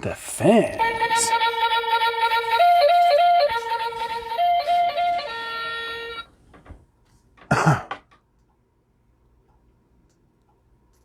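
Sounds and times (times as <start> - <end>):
flute-like melody: 0.8 - 6.3.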